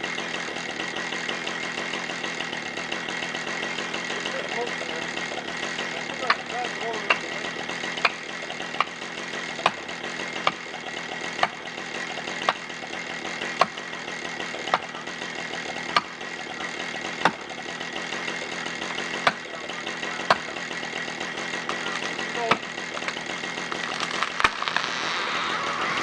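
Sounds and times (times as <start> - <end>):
engine idling: 0.0 - 26.0
wedge strikes: 5.3 - 6.5, 7.1 - 10.7, 11.4 - 11.8, 12.4 - 12.7, 13.4 - 17.6, 18.8 - 20.7.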